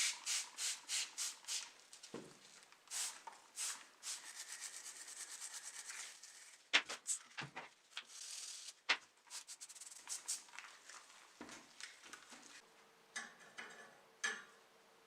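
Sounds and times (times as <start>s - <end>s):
quick rubbing strokes: 3.0s - 7.3s, 8.1s - 10.5s.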